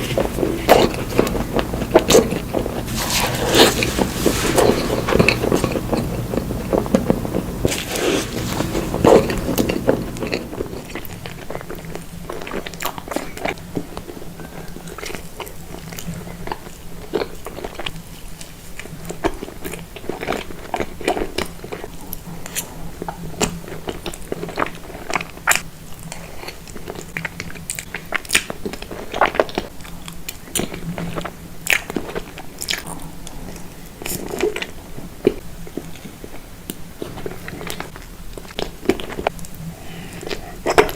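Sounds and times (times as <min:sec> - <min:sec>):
biting and chewing crisp pastry: 0:00.0 - 0:14.0.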